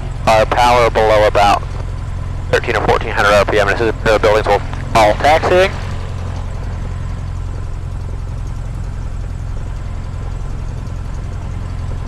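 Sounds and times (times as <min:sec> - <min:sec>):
light aircraft engine and propeller: 0:00.0 - 0:12.0.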